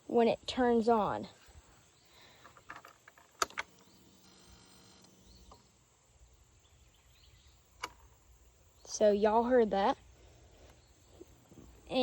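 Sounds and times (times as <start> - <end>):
sharp clicks: 2.6 - 4.4
electric fuel pump humming: 3.4 - 6.2.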